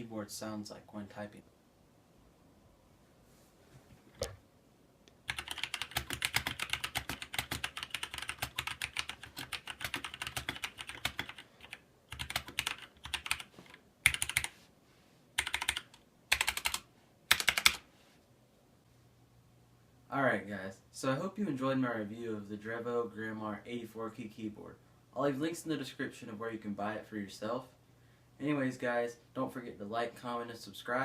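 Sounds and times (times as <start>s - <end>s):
mechanical keyboard typing: 5.3s - 14.5s, 15.4s - 17.8s.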